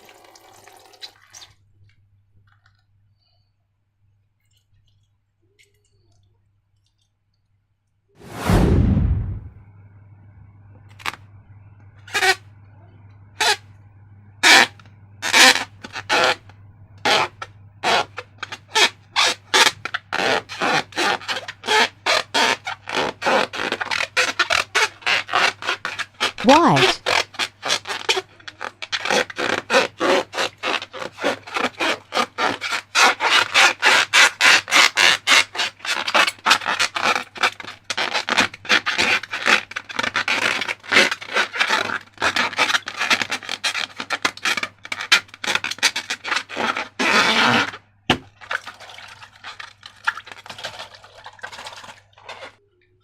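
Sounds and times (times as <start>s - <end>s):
rubbing and scraping balloons and slime: 8.2s - 9.5s, 12.0s - 12.5s, 13.4s - 13.7s, 14.4s - 52.6s.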